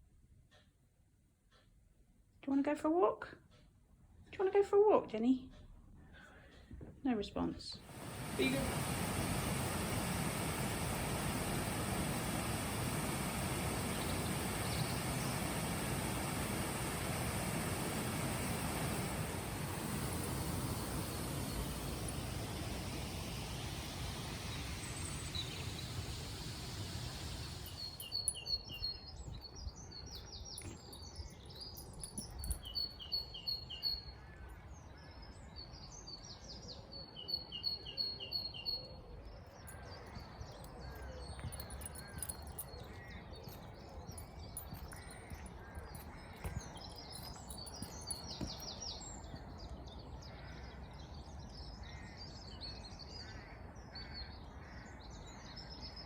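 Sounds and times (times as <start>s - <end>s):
birds chirping and twittering: 7.4s - 56.0s
steady rushing noise: 7.9s - 28.0s.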